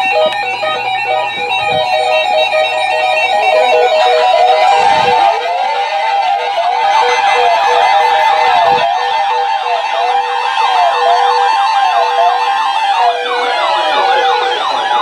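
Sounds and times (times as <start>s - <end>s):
guitar music: 0.0s - 8.8s
sirens wailing: 0.0s - 15.0s.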